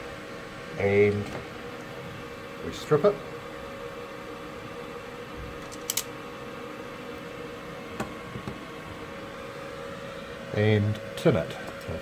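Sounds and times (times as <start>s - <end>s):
extractor fan humming: 0.0s - 12.0s
wire strippers clicking: 5.6s - 6.1s.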